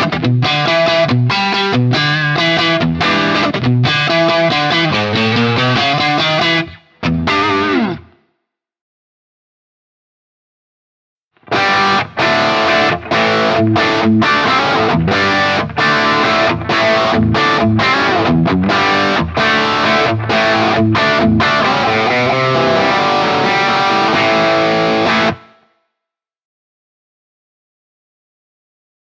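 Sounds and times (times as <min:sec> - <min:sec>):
overdriven electric guitar chords: 0:00.0 - 0:08.2, 0:11.4 - 0:25.7.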